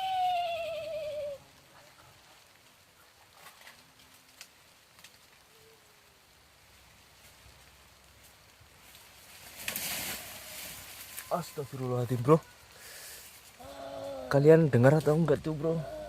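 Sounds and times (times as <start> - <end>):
high wavering wail: 0.0 - 1.4
light drizzle patter: 0.0 - 16.0.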